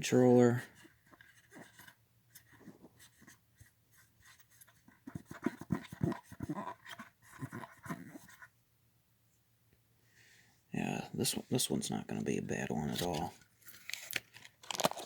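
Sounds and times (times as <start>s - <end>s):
scratchy scrubbing inside plastic cartridge: 0.7s - 8.5s.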